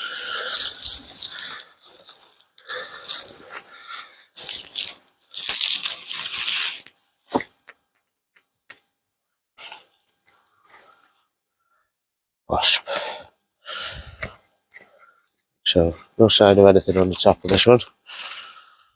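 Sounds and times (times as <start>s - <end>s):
dry foliage rustling and crackling: 0.0s - 6.9s.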